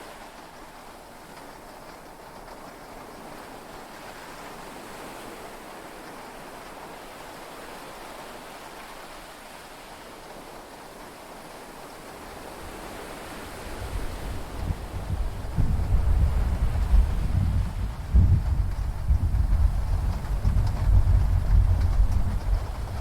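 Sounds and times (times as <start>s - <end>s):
sea waves: 0.0s - 17.9s
heavy rain: 0.0s - 23.0s.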